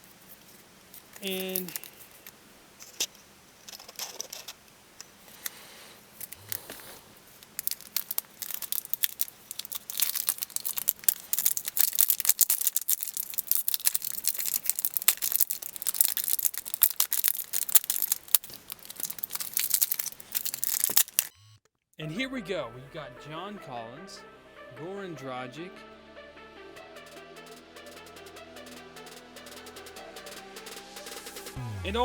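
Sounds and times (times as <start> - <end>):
foil wrapper crinkling and tearing: 0.0 - 4.6, 5.2 - 21.3.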